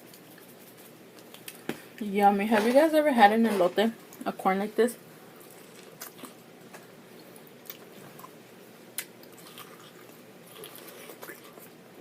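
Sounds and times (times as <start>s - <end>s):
chewing corn on the cob: 5.5s - 6.4s, 9.0s - 11.8s.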